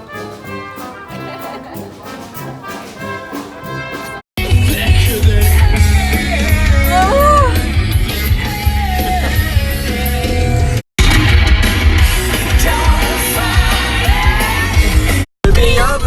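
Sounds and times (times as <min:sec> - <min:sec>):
loud rock music with singing: 0:04.4 - 0:16.0.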